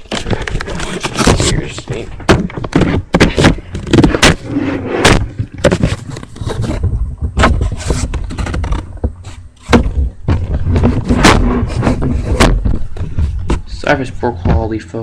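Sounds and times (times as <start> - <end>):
bangs crashes and scraping: 0.0 - 14.8.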